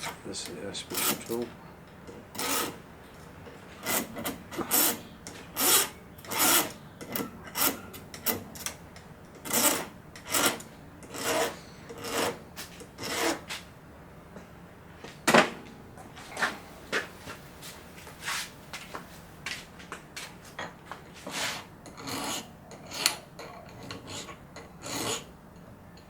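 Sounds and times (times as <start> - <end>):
hand file rasping on metal: 0.9 - 1.4, 2.3 - 2.8, 3.8 - 5.0, 5.6 - 8.4, 9.4 - 12.4, 13.0 - 13.6, 21.2 - 25.3.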